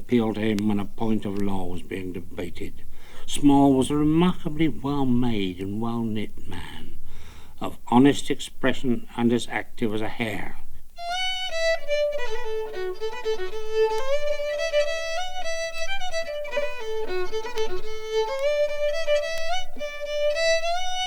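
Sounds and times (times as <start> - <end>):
fiddle playing a tune: 11.0 - 21.0.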